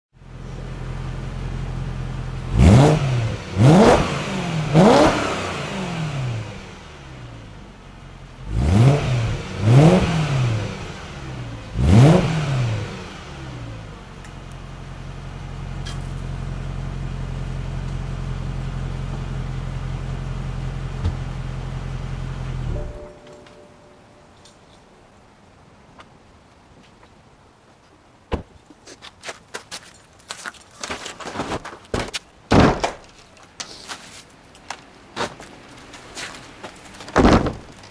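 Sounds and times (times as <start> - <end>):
car engine idling and revving: 0.2 - 23.3, 34.3 - 37.9.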